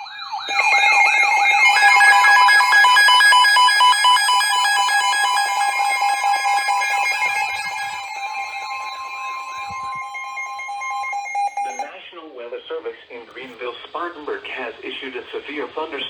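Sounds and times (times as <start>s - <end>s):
pulsing beeps: 0.0s - 11.9s
rising sweep alarms: 0.0s - 11.9s
steady alarm tone: 0.0s - 11.9s.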